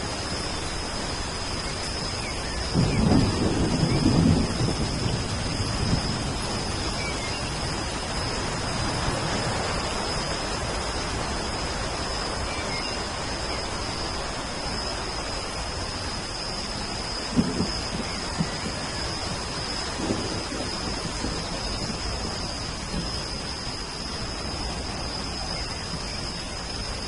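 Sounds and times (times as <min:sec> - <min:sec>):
steady rain: 0:00.0 - 0:27.0
low rumble of thunder: 0:01.7 - 0:11.4, 0:12.0 - 0:27.0.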